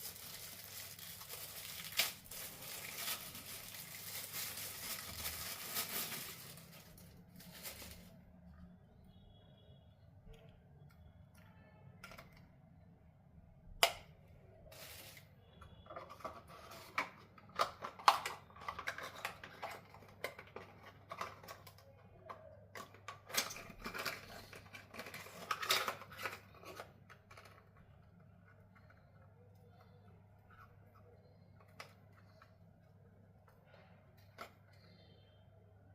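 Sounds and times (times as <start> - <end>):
packaging rustling: 0.0 - 8.2.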